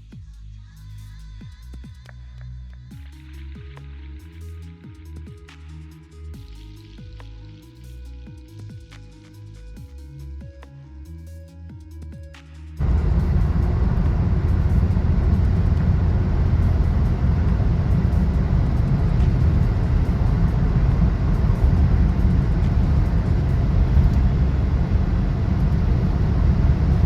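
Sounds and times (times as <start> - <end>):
car low rumble: 12.7 - 27.0.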